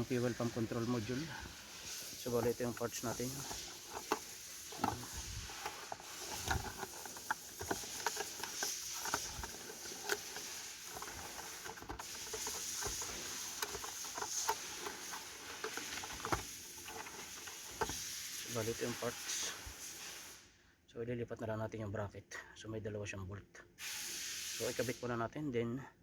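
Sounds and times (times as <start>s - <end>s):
small parts clicking and tapping: 1.8s - 18.4s.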